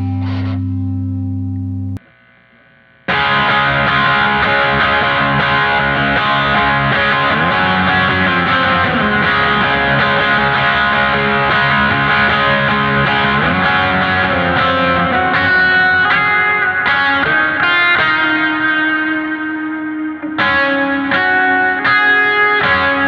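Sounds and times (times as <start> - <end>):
distorted electric guitar: 0.0 - 23.0.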